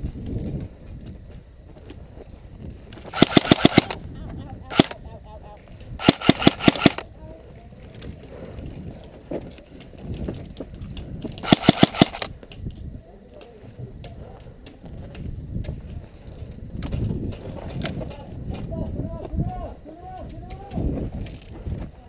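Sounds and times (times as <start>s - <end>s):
airsoft gun burst: 3.1s - 4.0s, 4.7s - 5.0s, 6.0s - 7.0s, 11.4s - 12.3s.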